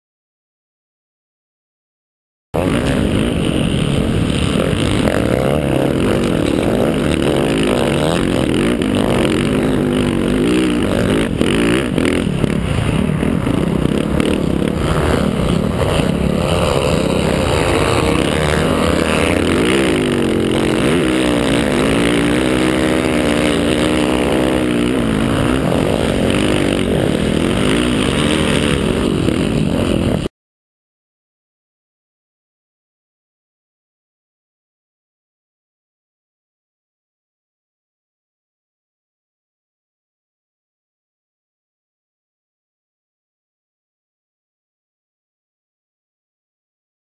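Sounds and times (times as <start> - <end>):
motocross bike engine revving: 2.6 - 30.3.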